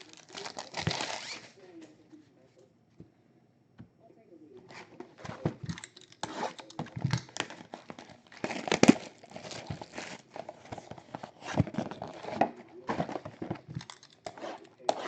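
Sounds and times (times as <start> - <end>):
card pack wrappers tearing: 0.0 - 1.6, 5.6 - 15.0.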